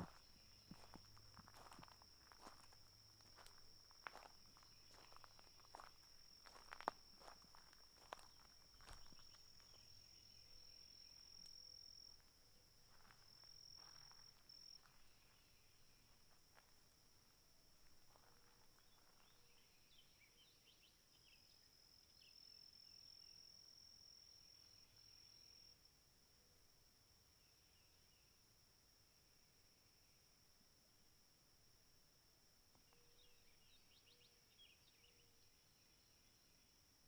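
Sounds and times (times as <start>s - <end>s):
soft insect chirping: 0.0s - 25.8s.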